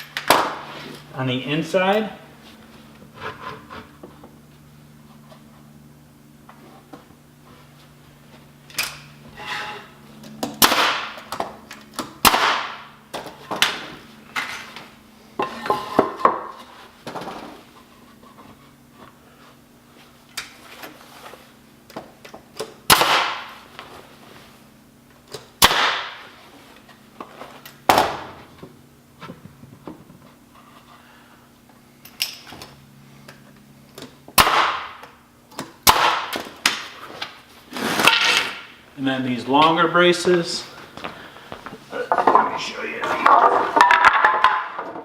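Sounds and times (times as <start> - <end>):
nail gun firing into wood: 10.6 - 11.3, 12.2 - 12.9, 22.9 - 23.6, 25.6 - 26.2, 34.4 - 35.0, 35.8 - 36.9
boards being handled knocks: 42.1 - 42.6, 43.2 - 45.0.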